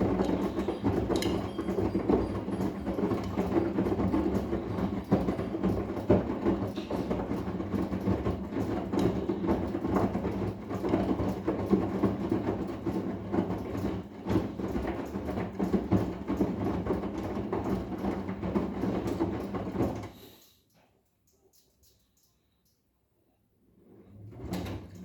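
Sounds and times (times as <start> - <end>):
washing drum clattering: 0.0 - 20.2
washing machine motor hum: 0.0 - 20.2, 23.7 - 25.0.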